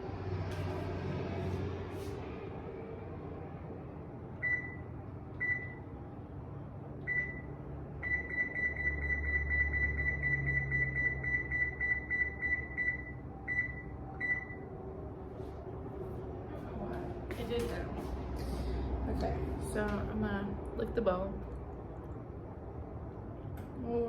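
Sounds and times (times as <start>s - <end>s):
oven timer keypad beeping: 4.4s - 4.8s, 5.4s - 5.8s, 7.1s - 14.6s.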